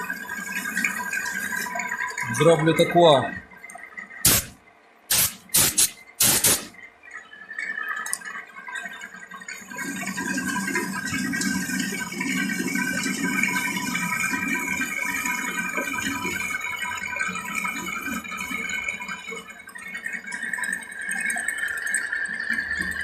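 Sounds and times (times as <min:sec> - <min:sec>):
sharp clicks: 0:04.3 - 0:06.8
milling machine cutting: 0:05.1 - 0:06.8.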